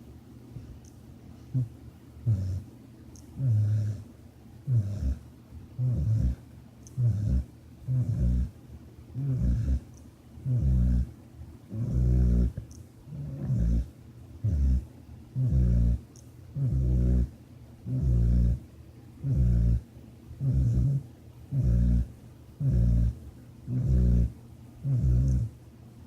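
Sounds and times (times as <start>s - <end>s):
quiet breaths: 0.0s - 26.0s
low rasping snores: 1.5s - 2.7s, 3.4s - 4.1s, 4.7s - 5.2s, 5.8s - 8.6s, 9.2s - 11.1s, 11.7s - 14.8s, 15.4s - 18.6s, 19.2s - 25.5s.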